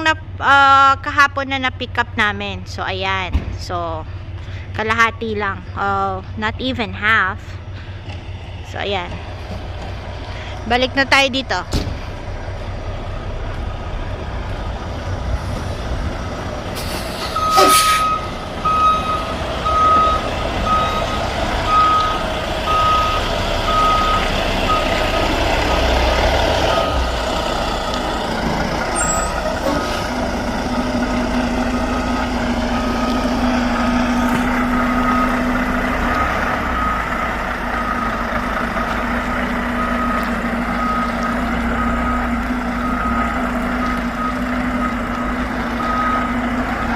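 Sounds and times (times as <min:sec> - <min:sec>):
truck reversing alarm beeping: 0:12.4 - 0:13.9, 0:16.0 - 0:46.9
air brake hiss: 0:16.8 - 0:18.0.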